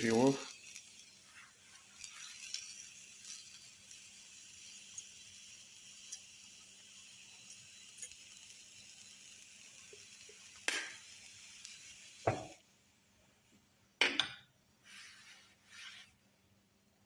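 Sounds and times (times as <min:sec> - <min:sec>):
steady hiss: 0:00.0 - 0:17.0
soft rustles: 0:14.8 - 0:16.3.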